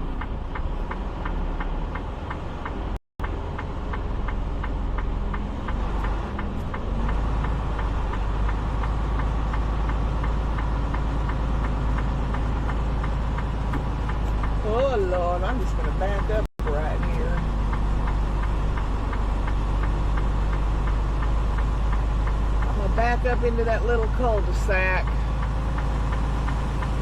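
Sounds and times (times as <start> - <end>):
diesel truck engine rumbling: 0.0 - 27.0
rapid even ticking: 0.2 - 23.4.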